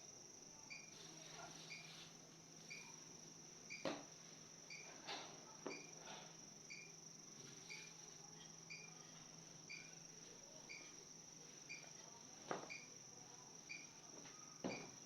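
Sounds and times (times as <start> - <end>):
crickets trilling: 0.0 - 15.0
short insect chirps: 0.7 - 3.9, 6.6 - 12.0, 12.7 - 13.0, 13.6 - 15.0.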